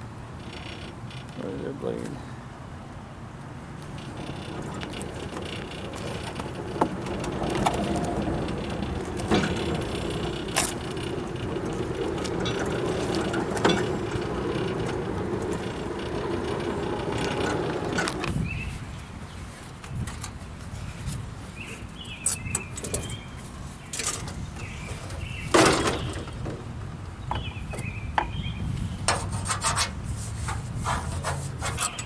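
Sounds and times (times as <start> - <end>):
steady mechanical hum: 0.0 - 32.0
metal clicks and clanks: 3.8 - 18.3, 23.9 - 24.4, 30.9 - 32.0.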